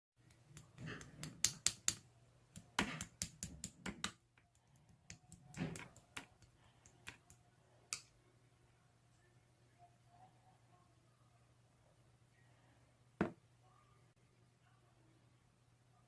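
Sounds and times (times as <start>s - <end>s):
faint steady hum: 4.4s - 16.0s.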